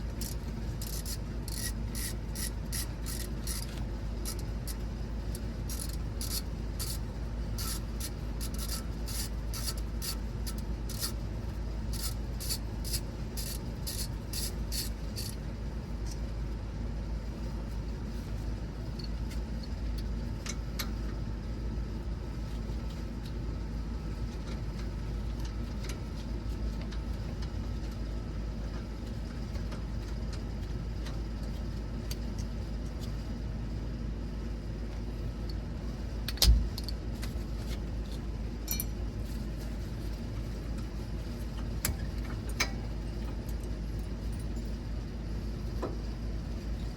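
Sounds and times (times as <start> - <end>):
steady low hum: 0.0 - 46.9
ratchet wrench clicking: 0.2 - 7.0, 7.6 - 11.2, 11.9 - 15.4.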